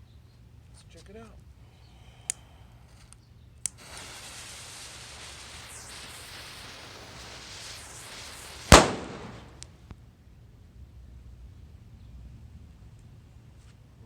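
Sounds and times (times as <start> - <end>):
fuse hissing: 3.6 - 9.6
firecracker bang: 3.8 - 9.8.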